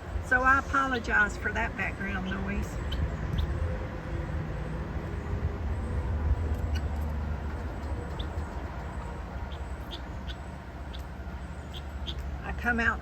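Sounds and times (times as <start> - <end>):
poultry chirping: 2.1 - 3.6, 5.7 - 12.4.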